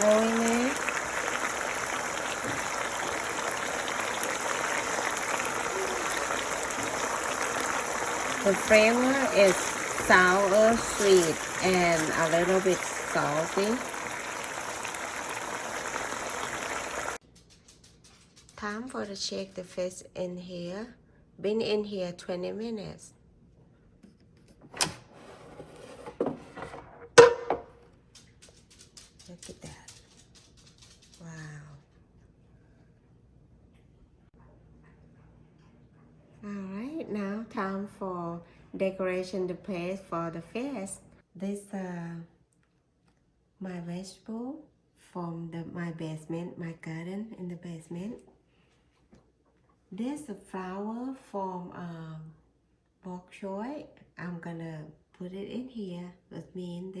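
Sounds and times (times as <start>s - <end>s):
sauce simmering and bubbling: 0.0s - 17.2s
drawer sliding and rattling: 24.7s - 26.9s.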